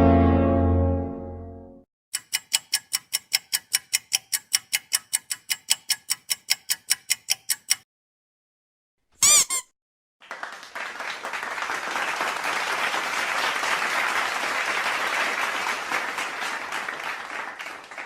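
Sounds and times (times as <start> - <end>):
low horn note: 0.0 - 1.8
rapid ticking sound effect: 2.2 - 7.8.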